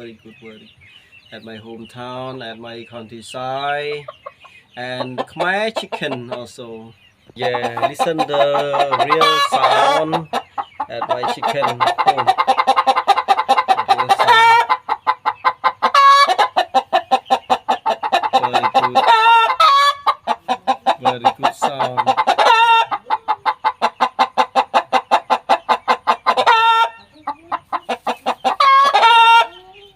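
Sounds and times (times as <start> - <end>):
hen cackling: 0.0 - 29.9.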